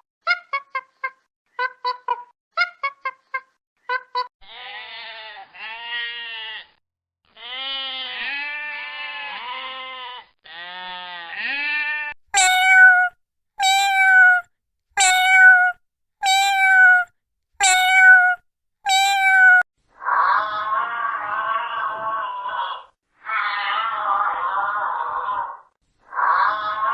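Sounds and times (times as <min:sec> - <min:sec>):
domestic animal calls: 0:12.4 - 0:14.4, 0:15.0 - 0:19.6.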